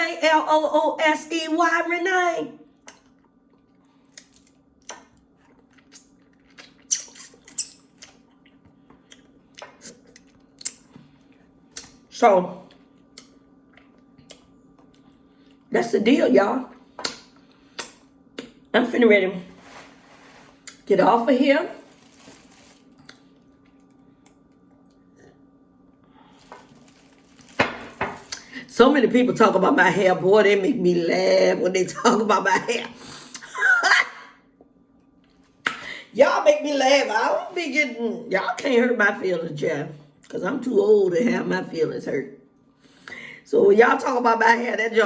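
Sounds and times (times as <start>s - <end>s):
faint steady hum: 0.0s - 45.0s
wet chewing: 2.8s - 12.0s.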